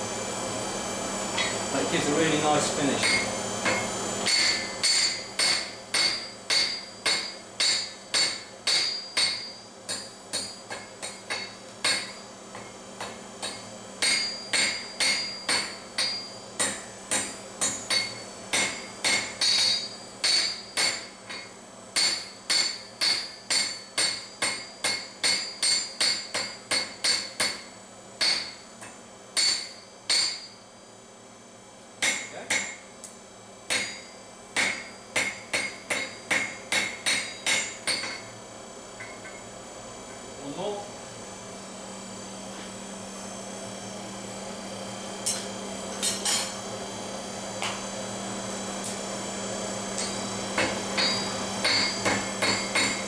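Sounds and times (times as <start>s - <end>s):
hammer striking steel on anvil: 1.3s - 1.7s, 2.9s - 30.6s, 32.0s - 33.1s, 33.7s - 38.3s, 39.0s - 39.5s, 45.2s - 46.6s, 49.9s - 53.0s.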